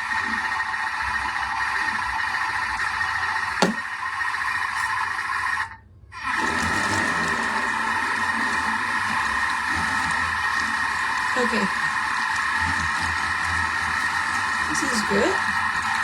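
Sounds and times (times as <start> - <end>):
utensil knocking against pan: 3.6 - 3.8.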